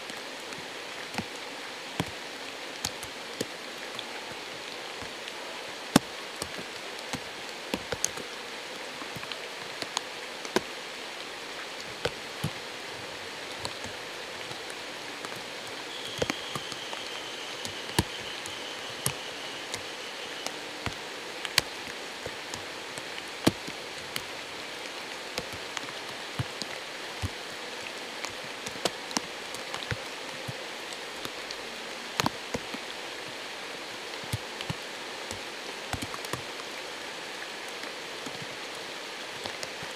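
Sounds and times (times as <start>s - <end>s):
flowing stream water: 0.0s - 39.9s
faint high wavering tone: 15.8s - 20.8s.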